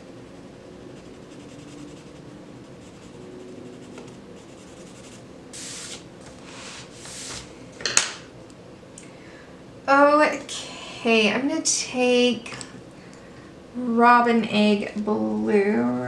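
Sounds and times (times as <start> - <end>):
pencil scratching on paper: 1.0 - 6.0.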